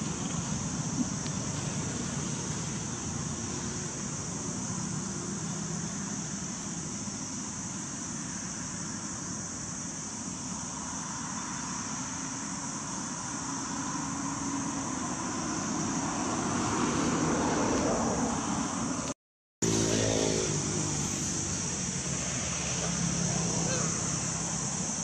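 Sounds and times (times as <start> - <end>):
high-pitched hiss: 0.0 - 25.0.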